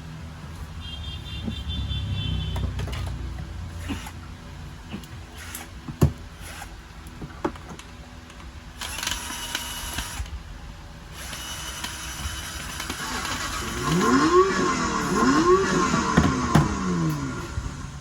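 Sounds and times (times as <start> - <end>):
small electric motor whirring: 8.8 - 10.3, 11.1 - 17.9.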